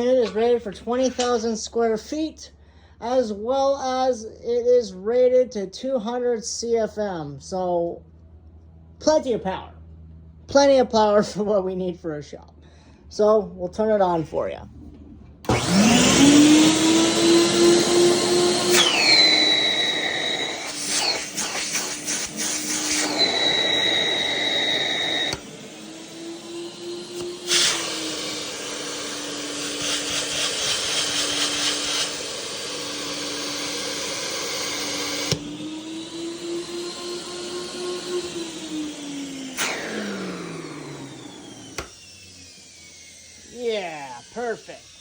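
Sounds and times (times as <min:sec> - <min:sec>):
vacuum motor hum and rushing air: 0:14.8 - 0:45.0.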